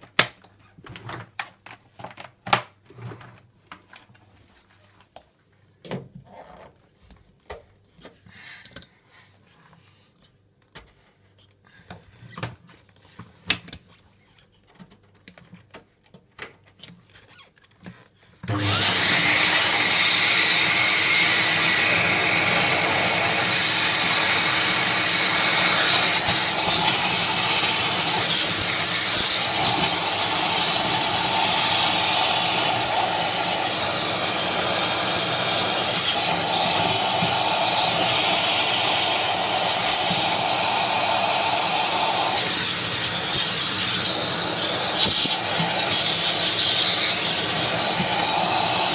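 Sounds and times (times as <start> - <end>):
vacuum cleaner running loudly: 18.5 - 48.9.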